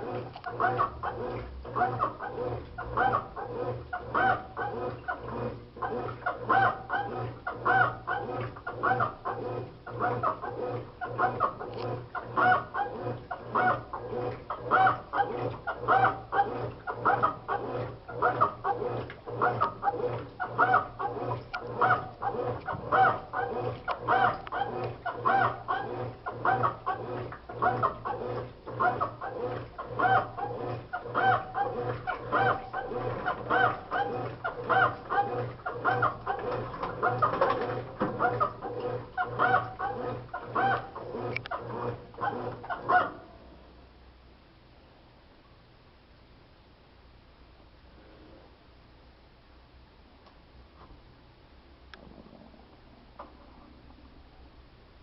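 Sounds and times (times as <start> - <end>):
washing machine motor humming: 0.0 - 43.8.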